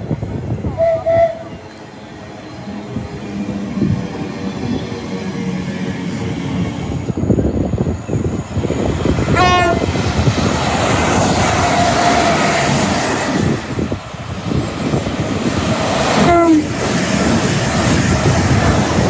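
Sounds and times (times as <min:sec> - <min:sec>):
train rail and wind noise: 0:00.0 - 0:19.0
train horn blasts: 0:00.7 - 0:01.7, 0:09.3 - 0:09.9, 0:16.2 - 0:16.8.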